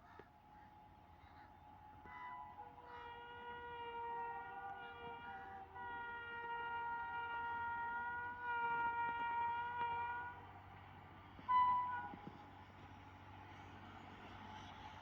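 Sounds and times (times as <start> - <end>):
train horn blasts: 2.0 - 10.5, 11.5 - 12.4.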